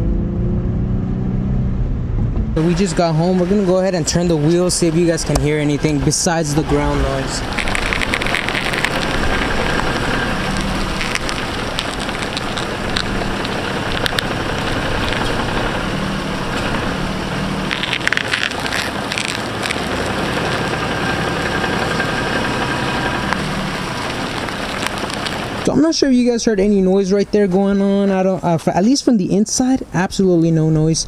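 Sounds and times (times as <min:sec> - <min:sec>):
car engine running: 0:00.0 - 0:26.4
tyre ground noise: 0:01.1 - 0:29.6
small clicks and crackles: 0:07.5 - 0:15.8, 0:17.6 - 0:25.7.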